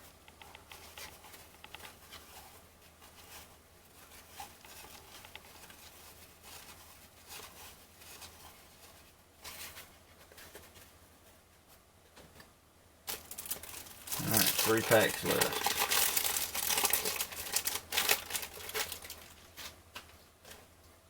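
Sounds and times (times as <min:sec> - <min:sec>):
cards rustling and sliding: 0:14.2 - 0:15.6.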